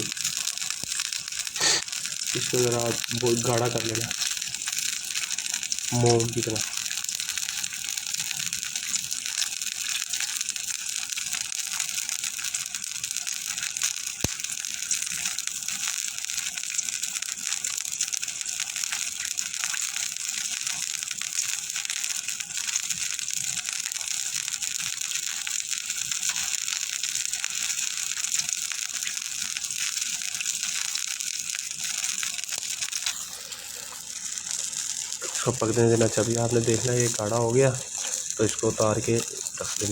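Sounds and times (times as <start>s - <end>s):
syrup sizzling and bubbling: 0.0s - 39.9s.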